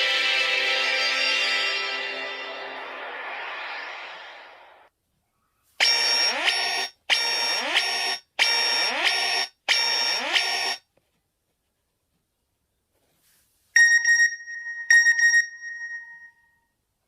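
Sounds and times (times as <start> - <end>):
buzzy electronic ringtone: 5.8 - 10.8.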